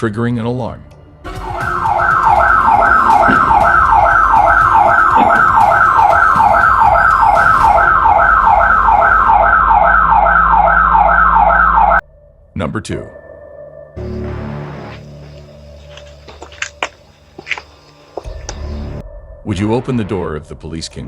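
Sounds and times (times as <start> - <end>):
burglar alarm siren whooping: 1.2 - 12.0.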